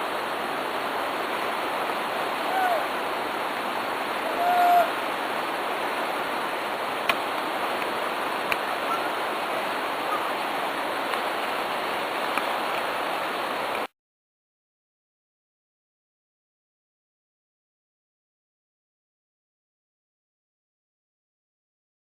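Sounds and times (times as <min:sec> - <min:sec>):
river water rushing: 0:00.0 - 0:13.9.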